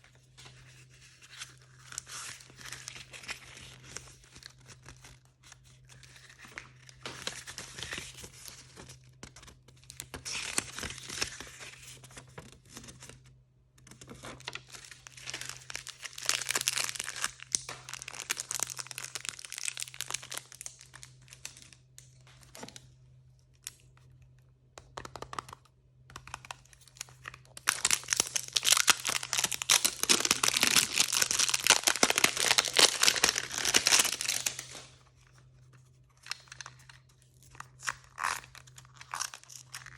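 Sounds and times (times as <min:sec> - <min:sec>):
plastic packaging crinkling and tearing: 0:14.1 - 0:22.8, 0:26.3 - 0:35.0, 0:36.2 - 0:39.9.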